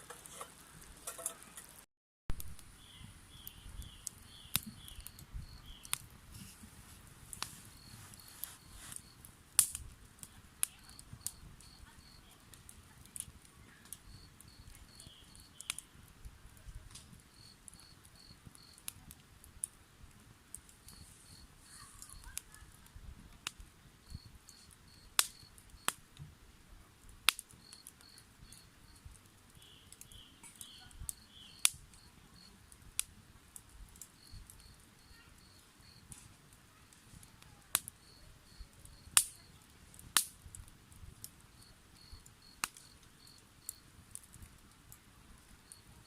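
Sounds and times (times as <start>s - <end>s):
sharp snaps and pops: 0.0s - 19.8s, 20.5s - 26.3s, 27.1s - 45.9s
insects chirping: 41.5s - 43.9s.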